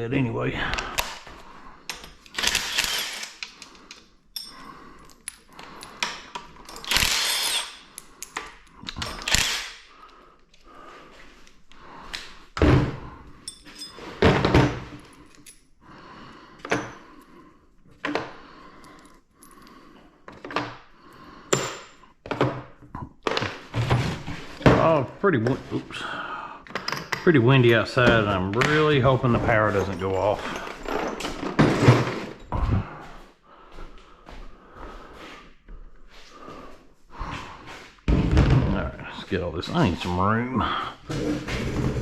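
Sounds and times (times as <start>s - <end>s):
metal parts and tools clattering: 0.9s - 9.9s, 13.4s - 15.8s, 26.7s - 32.6s
parts set down with thunks: 14.1s - 15.0s, 38.1s - 38.8s.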